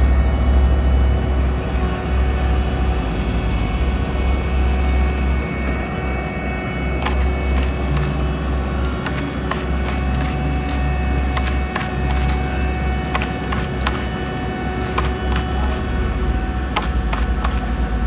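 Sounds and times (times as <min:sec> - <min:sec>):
diesel paving machine rumbling: 0:00.0 - 0:18.0
sharp metallic clicks and clanks: 0:07.0 - 0:12.5, 0:13.1 - 0:14.1.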